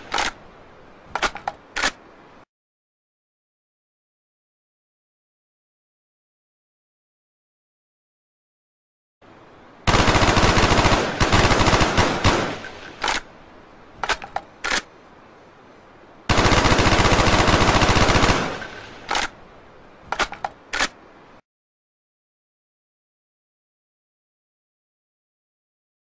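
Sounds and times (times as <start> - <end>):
rifle firing automatic bursts: 9.9 - 13.2, 16.3 - 19.2.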